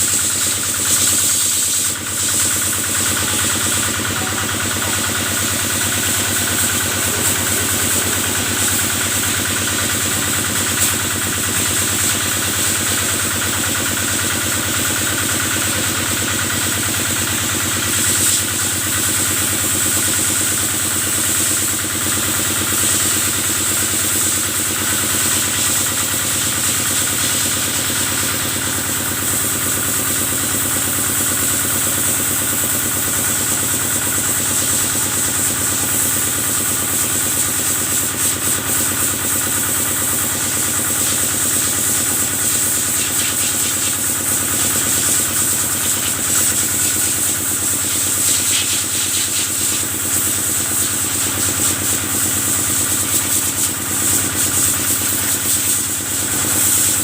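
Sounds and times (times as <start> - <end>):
engine running steadily: 0.0 - 57.0.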